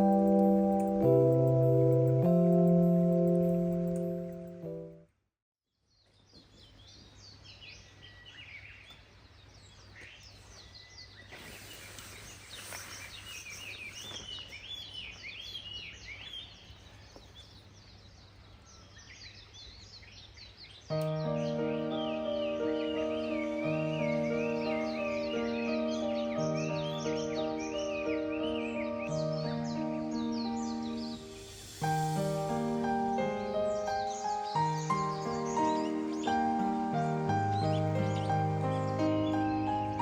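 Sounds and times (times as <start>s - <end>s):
music: 0.0s - 5.0s, 20.9s - 40.0s
birds chirping and trilling: 6.0s - 40.0s.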